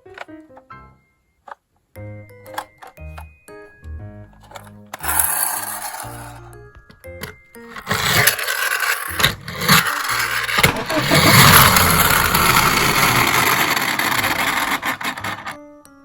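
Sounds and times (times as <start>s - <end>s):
toy cars clacking: 1.4s - 1.8s, 2.4s - 3.3s, 4.3s - 15.6s
toy cars rolling rattle: 4.4s - 6.5s, 7.2s - 15.6s.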